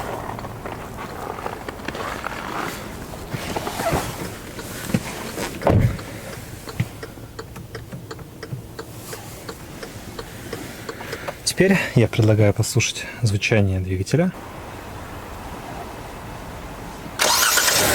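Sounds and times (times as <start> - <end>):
light clicks and knocks: 3.5 - 11.5
heavy low thump: 5.6 - 6.0.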